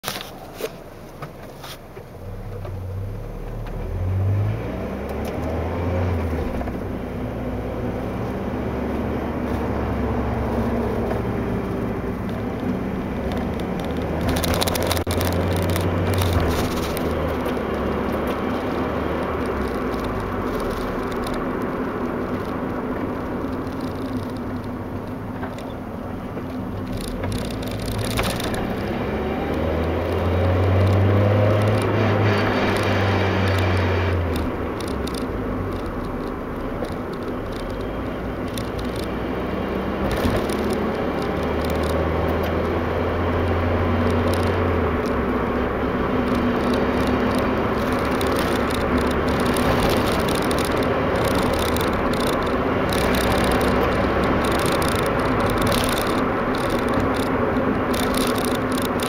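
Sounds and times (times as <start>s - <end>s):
car engine and road noise: 0.0s - 59.0s
plastic rattle: 10.4s - 59.0s
clicks: 43.8s - 59.0s.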